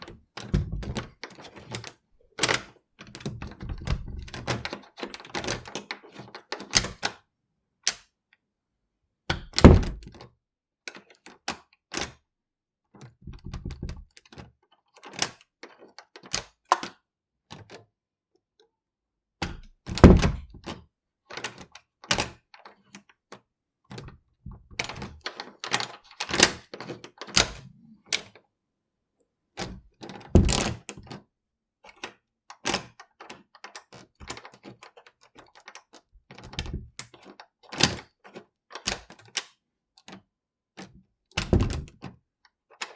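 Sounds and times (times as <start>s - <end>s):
door thudding shut: 9.6s - 10.0s, 20.0s - 20.4s, 30.4s - 30.7s, 41.4s - 41.8s.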